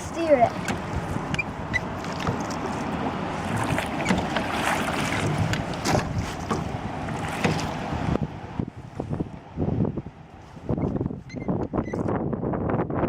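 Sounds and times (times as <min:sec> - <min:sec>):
paddle splashing in water: 0:00.0 - 0:09.4
rushing water: 0:00.0 - 0:11.3
wind on microphone: 0:00.0 - 0:13.0.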